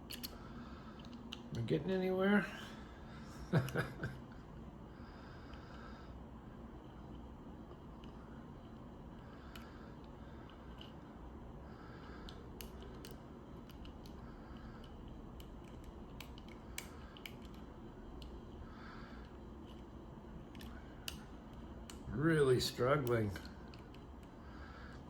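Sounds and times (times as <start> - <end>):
lock picking metallic clicks: 0.0 - 0.4.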